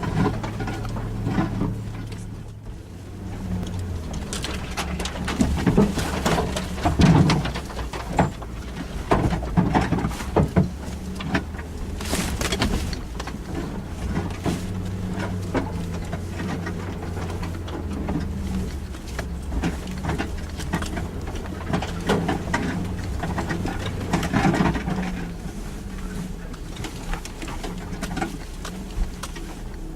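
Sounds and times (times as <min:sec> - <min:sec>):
car engine running at low revs: 0:00.0 - 0:29.9
knocks and rattles: 0:00.0 - 0:29.9.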